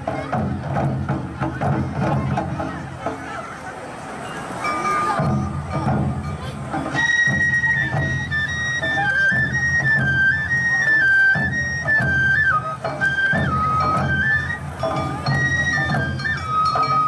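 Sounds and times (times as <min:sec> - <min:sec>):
drums: 0:00.0 - 0:17.0
bamboo flute melody: 0:04.2 - 0:17.0.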